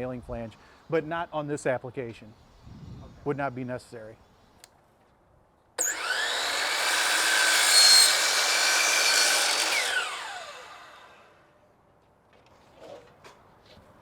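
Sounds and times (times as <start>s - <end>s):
electric power saw cutting board: 5.8s - 11.4s
saw blade winding down: 5.8s - 11.4s.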